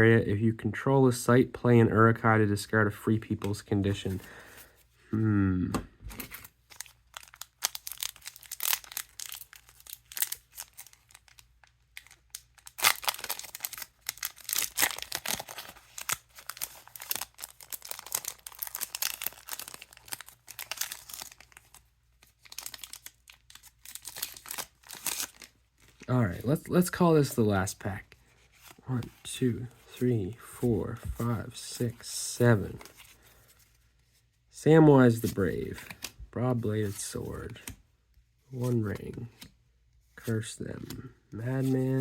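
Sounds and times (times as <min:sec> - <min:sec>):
cards being handled: 0:03.3 - 0:04.7, 0:05.7 - 0:34.4, 0:35.1 - 0:37.8, 0:38.5 - 0:42.0
foil wrappers crinkling and tearing: 0:06.1 - 0:26.1.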